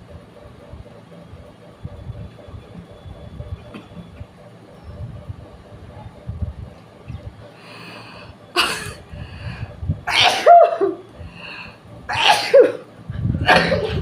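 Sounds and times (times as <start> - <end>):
person sneezing: 10.1 - 10.7.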